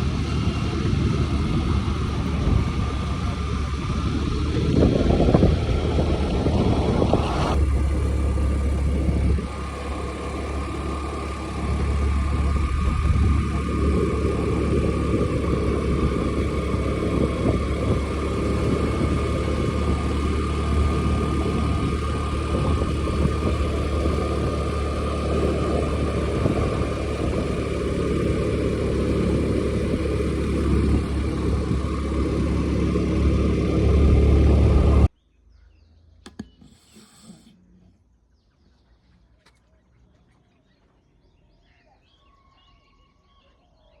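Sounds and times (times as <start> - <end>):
scooter engine whining: 0.0 - 35.1.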